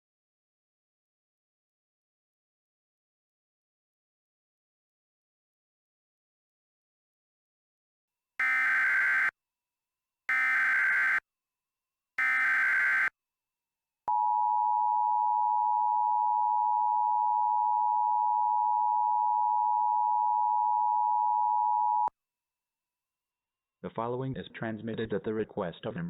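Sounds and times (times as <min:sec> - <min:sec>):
buzzy data bursts: 0:08.4 - 0:09.3, 0:10.3 - 0:11.2, 0:12.2 - 0:13.1.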